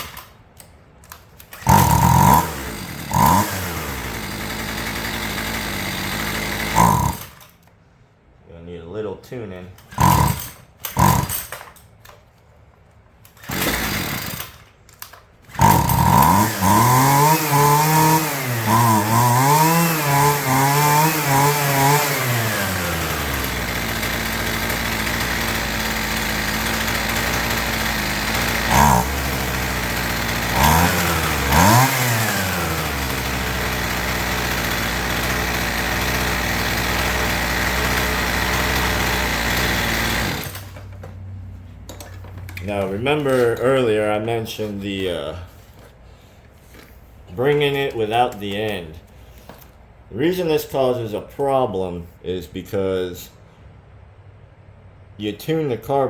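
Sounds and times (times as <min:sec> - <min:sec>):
string trimmer engine: 0:01.1 - 0:07.7, 0:09.9 - 0:11.8, 0:13.3 - 0:41.2.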